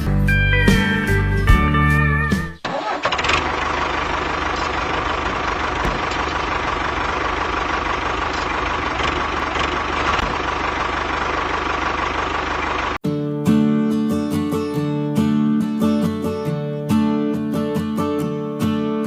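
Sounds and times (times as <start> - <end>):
engine running steadily: 2.6 - 13.0.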